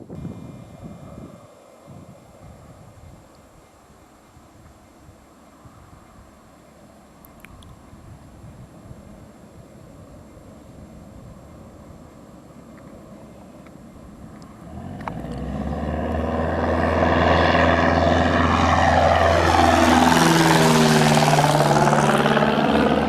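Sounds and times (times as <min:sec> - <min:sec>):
propeller plane engine passing: 0:09.0 - 0:23.0.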